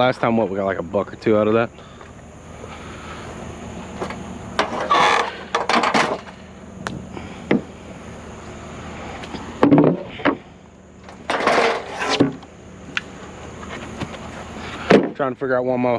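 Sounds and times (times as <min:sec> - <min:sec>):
scrap items clattering: 0:04.0 - 0:06.4, 0:11.1 - 0:12.4
heavy thumps: 0:04.0 - 0:07.8.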